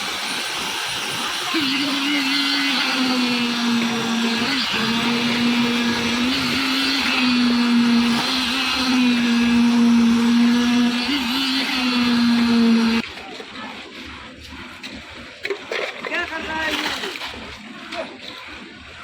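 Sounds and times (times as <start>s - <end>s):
concrete churning in drum: 0.0s - 19.0s
concrete mixer engine drone: 0.0s - 19.0s.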